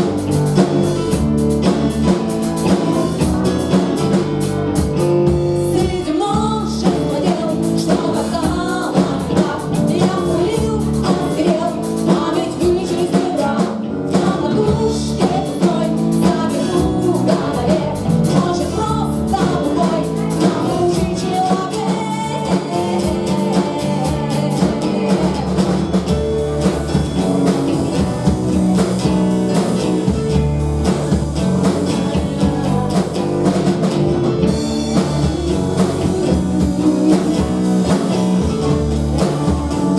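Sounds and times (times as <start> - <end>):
person singing: 0.0 - 26.2, 27.6 - 39.9
live rock band playing: 0.0 - 39.9.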